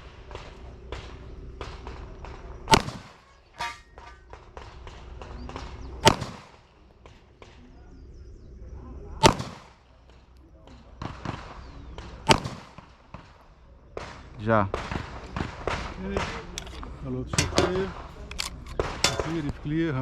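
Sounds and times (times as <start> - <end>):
faint distant gunshots: 0.0 - 7.9, 9.2 - 19.7
loud pistol shots: 2.7 - 3.4, 6.0 - 6.6, 9.2 - 9.8, 11.0 - 12.9, 17.4 - 19.5
metal ringing clang: 3.2 - 4.3, 17.4 - 18.0, 19.0 - 19.5.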